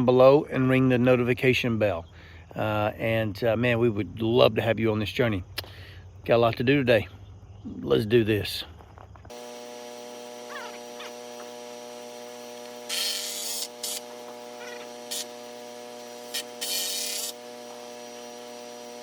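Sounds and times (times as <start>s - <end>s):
short hissing bursts: 9.3s - 19.0s
steady machine hum: 9.3s - 19.0s.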